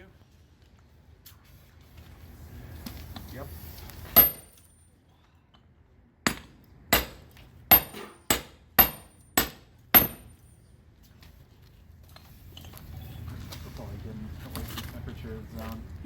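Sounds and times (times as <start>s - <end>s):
hammer blows on iron: 6.3s - 10.4s.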